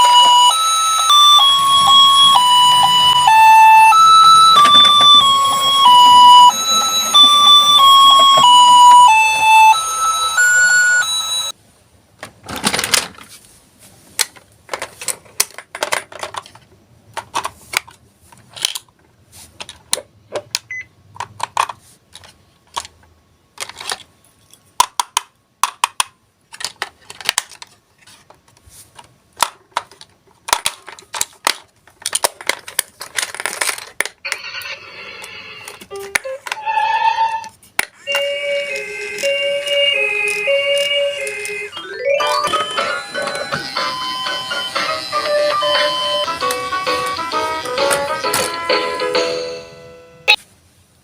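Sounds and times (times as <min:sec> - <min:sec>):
electronic beeping tune: 0:00.0 - 0:11.6, 0:41.7 - 0:46.3
toy cars clicking and clattering: 0:14.2 - 0:18.9, 0:23.6 - 0:28.2, 0:29.0 - 0:34.6.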